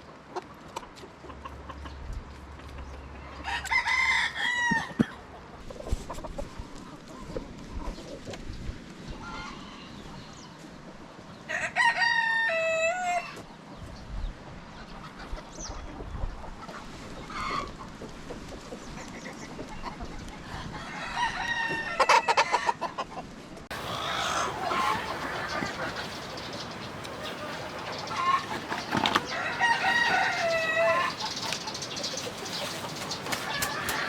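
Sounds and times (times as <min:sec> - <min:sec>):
hens clucking quietly: 0:00.1 - 0:10.7, 0:14.7 - 0:34.0
rooster crowing: 0:03.4 - 0:05.1, 0:11.5 - 0:13.4, 0:20.8 - 0:22.6, 0:23.7 - 0:26.3, 0:27.2 - 0:31.4.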